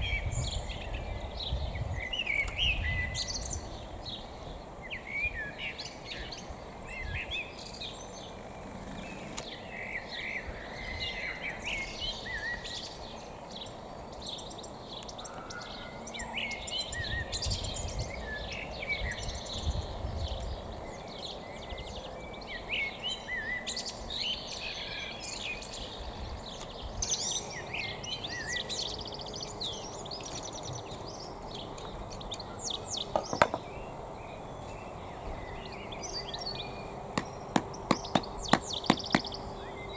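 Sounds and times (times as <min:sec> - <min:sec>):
songbirds singing and chirping: 0:00.0 - 0:39.9
sharp knock: 0:33.2 - 0:33.6, 0:37.2 - 0:39.3.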